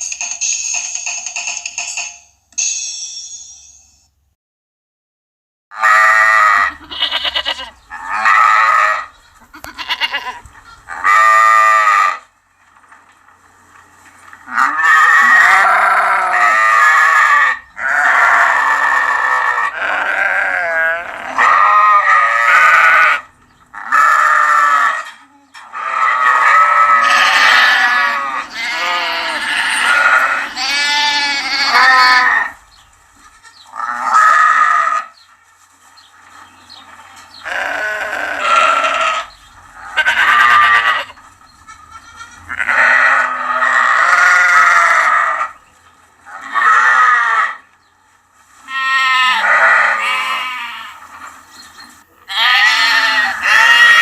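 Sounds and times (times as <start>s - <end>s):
sheep bleating: 5.8s - 12.2s, 14.4s - 25.1s, 25.8s - 32.6s, 33.2s - 35.1s, 37.4s - 45.6s, 46.3s - 47.6s, 48.6s - 51.1s, 52.3s - 54.0s.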